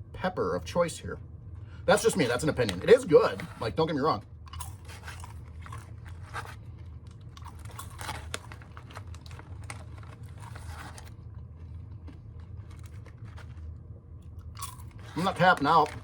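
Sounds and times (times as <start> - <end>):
steady low hum: 0.0 - 16.0
person chewing crunchy popcorn: 4.4 - 16.0.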